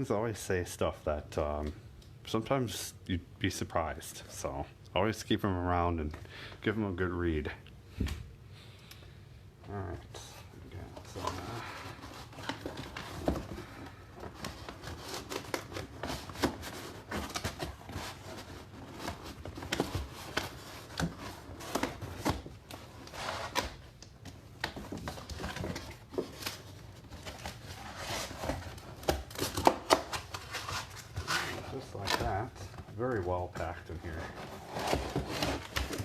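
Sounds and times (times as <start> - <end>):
cardboard rustling and scraping: 9.8 - 36.0.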